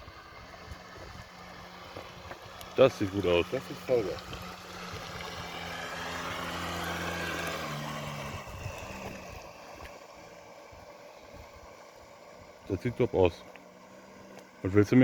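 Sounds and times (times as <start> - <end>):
model boat motor hum: 0.0 - 15.0
water noise: 0.0 - 15.0.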